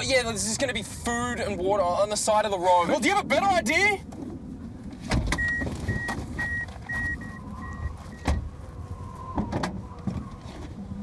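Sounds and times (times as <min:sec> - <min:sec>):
car warning chime beeping: 0:05.4 - 0:08.3.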